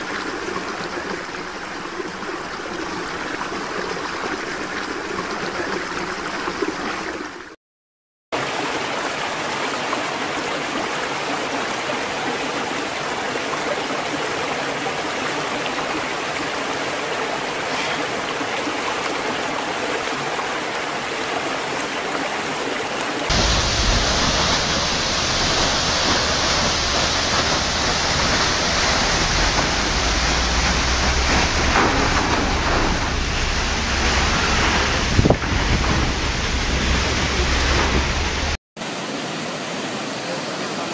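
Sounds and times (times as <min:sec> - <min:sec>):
rushing flowing water: 0:00.0 - 0:07.6, 0:08.4 - 0:40.9
deep rumble: 0:23.3 - 0:38.6.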